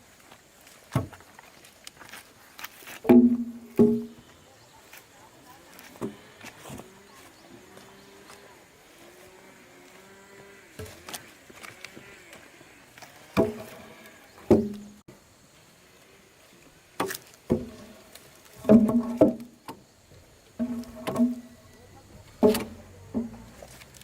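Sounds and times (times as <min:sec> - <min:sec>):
sharp strikes on timber: 0:03.0 - 0:04.2, 0:22.4 - 0:23.4.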